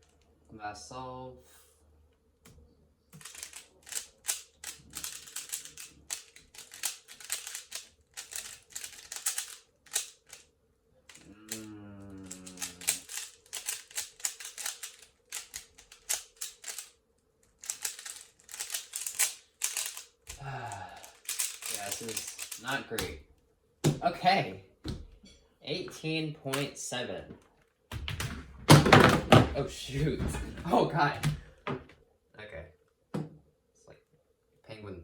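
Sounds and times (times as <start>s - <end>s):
speedcube clicking: 3.2s - 10.5s, 11.1s - 23.2s.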